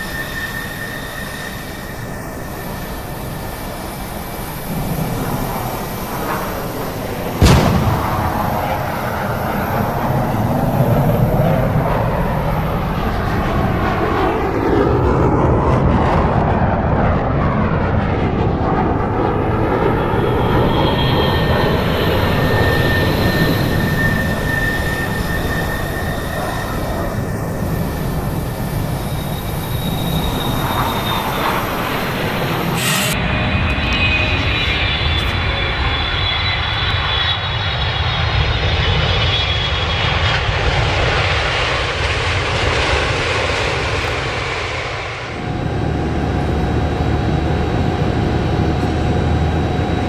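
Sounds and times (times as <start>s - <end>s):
high-pitched whines: 0.0s - 14.0s, 18.8s - 40.1s, 43.3s - 50.0s
jet engines rushing: 0.0s - 50.0s
heavy thump: 7.4s - 8.9s.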